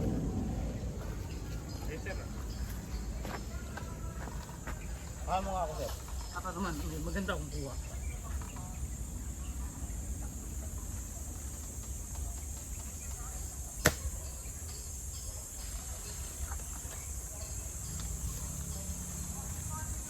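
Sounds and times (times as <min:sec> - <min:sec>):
wind rumble on microphone: 0:00.0 - 0:05.2
insects chirring: 0:00.0 - 0:20.0.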